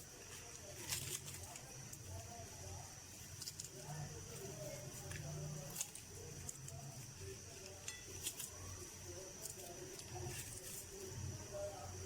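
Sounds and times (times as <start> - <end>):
low background murmur: 0.0 - 12.0
utensils clinking on dishes: 7.8 - 8.4.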